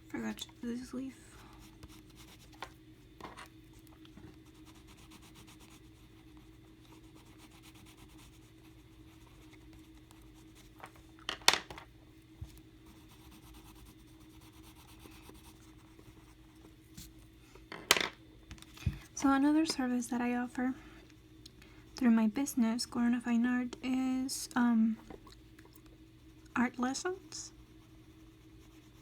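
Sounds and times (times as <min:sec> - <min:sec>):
pencil rubbing on paper: 0:04.4 - 0:10.8, 0:12.8 - 0:16.4, 0:27.5 - 0:29.0.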